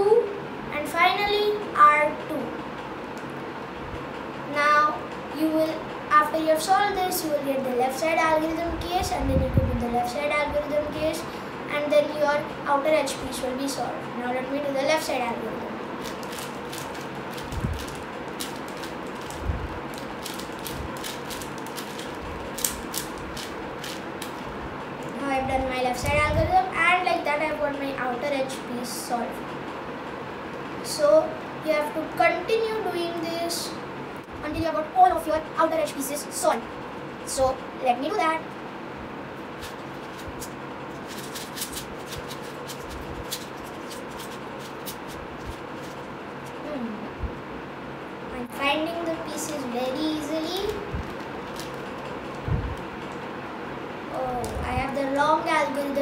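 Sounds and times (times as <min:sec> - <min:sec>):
steady low hum: 0:00.0 - 0:56.0
puzzle cube plastic clicks: 0:20.2 - 0:24.4.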